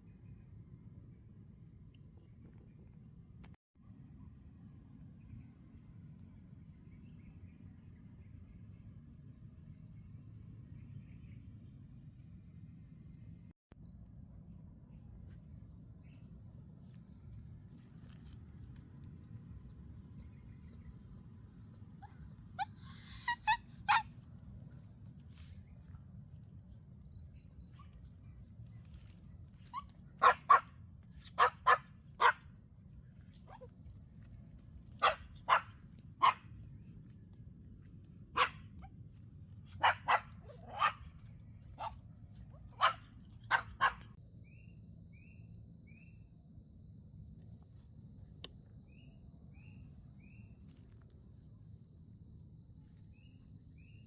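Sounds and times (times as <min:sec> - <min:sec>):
insects droning: 0:00.0 - 0:54.0
dog barking: 0:22.0 - 0:24.2, 0:29.7 - 0:32.5, 0:33.5 - 0:33.7, 0:35.0 - 0:36.5, 0:38.4 - 0:38.9, 0:39.7 - 0:42.0, 0:42.6 - 0:44.2.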